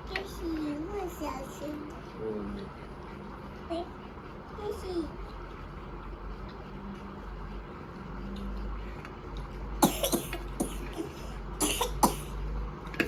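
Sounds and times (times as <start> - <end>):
person coughing: 9.8 - 12.4.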